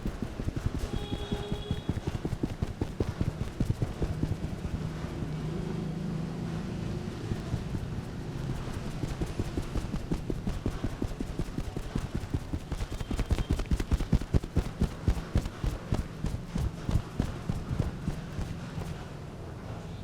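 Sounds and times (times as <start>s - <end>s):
hand massage slaps and taps: 0.0s - 4.9s, 7.4s - 19.0s.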